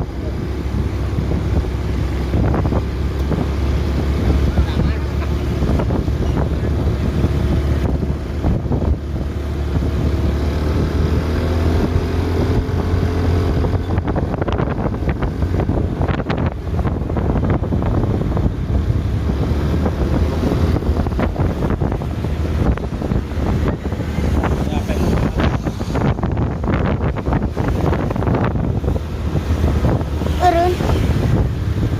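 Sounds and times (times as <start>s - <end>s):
low vehicle rumble: 0.0s - 31.9s
wind buffeting microphone: 0.0s - 31.9s.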